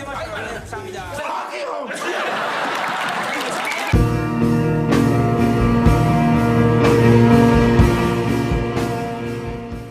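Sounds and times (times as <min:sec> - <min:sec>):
instrumental guitar music: 0:04.0 - 0:09.9.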